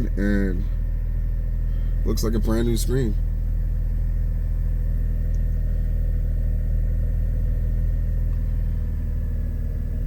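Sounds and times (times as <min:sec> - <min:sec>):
car engine idling: 0:00.0 - 0:10.0.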